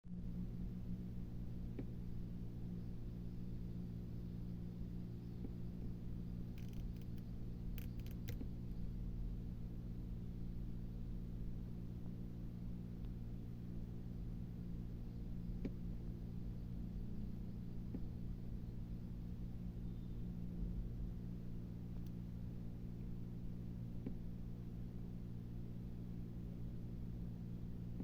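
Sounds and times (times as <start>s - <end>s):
steady low hum: 0.1s - 28.0s
faint sharp clicks: 6.6s - 8.5s.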